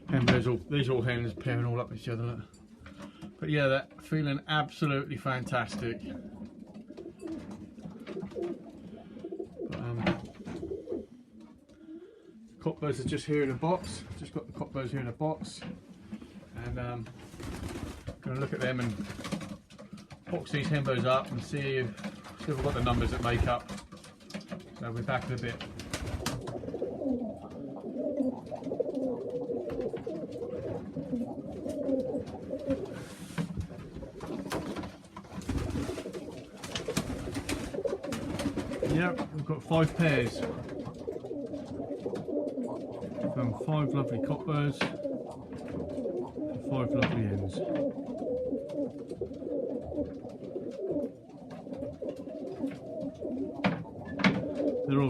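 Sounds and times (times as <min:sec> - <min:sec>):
pigeons cooing: 0:00.0 - 0:55.0.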